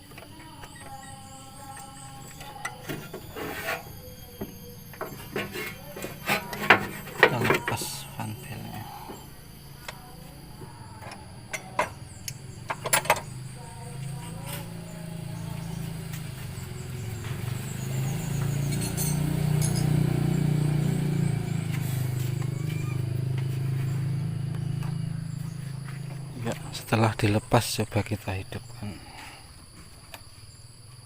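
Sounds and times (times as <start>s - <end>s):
steady low hum: 0.0s - 29.5s
metal tools clicking on engine: 0.1s - 7.9s, 11.0s - 13.5s, 17.3s - 20.5s.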